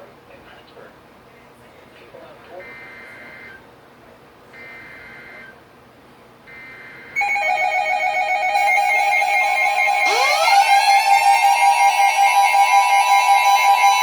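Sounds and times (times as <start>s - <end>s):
steady alert tone: 6.5s - 14.0s.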